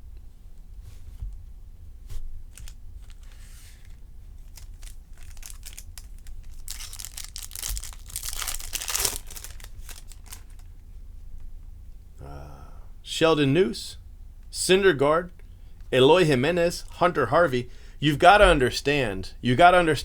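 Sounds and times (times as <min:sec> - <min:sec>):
foil wrapper tearing and crinkling: 0:02.5 - 0:10.7.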